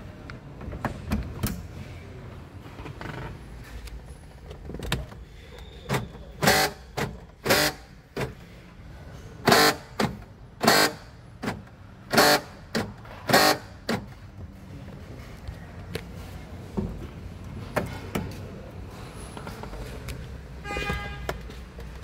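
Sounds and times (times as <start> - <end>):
car door lock actuator buzzing: 9.4 - 14.1.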